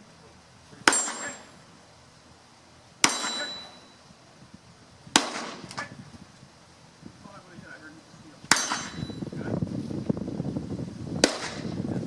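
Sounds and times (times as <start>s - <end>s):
steel target ringing clang: 0.8s - 1.6s, 3.0s - 4.0s, 8.5s - 9.2s
pistol shots: 3.0s - 3.6s, 5.2s - 5.7s, 11.2s - 11.7s.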